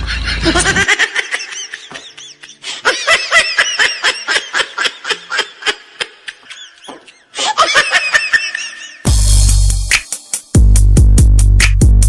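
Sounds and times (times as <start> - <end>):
high-pitched giggling laugh: 0.0 - 9.1.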